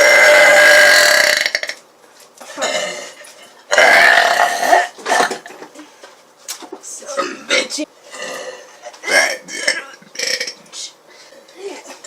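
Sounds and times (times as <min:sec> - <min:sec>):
loud burping: 0:00.0 - 0:01.8, 0:02.6 - 0:05.5, 0:07.2 - 0:10.6.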